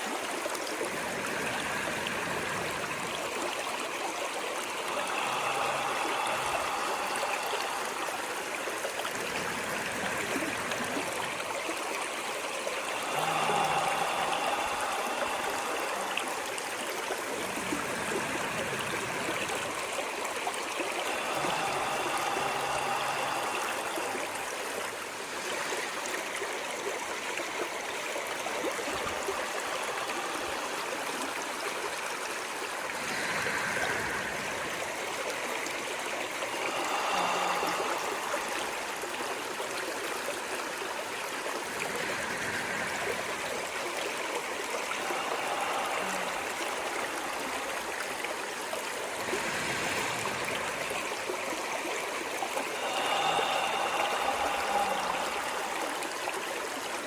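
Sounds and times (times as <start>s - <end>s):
running water stream: 0.0s - 57.0s.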